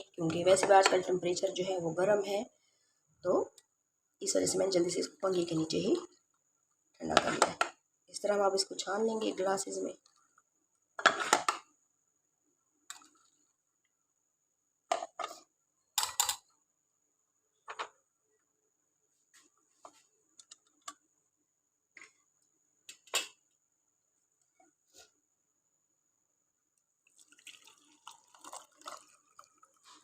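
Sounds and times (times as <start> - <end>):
kitchenware clinking and knocking: 16.0 - 16.5.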